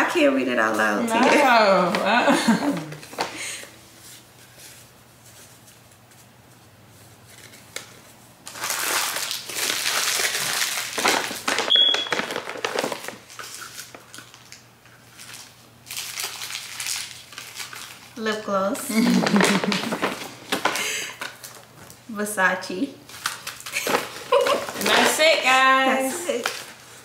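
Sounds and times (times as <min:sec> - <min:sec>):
paper crinkling and rustling: 0:04.0 - 0:18.2, 0:19.0 - 0:22.0, 0:23.1 - 0:27.0.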